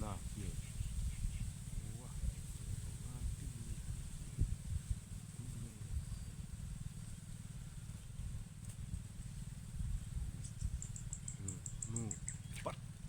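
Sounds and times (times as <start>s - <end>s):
low rumble on microphone: 0.0s - 13.0s
rapid short high ticks: 10.4s - 12.8s.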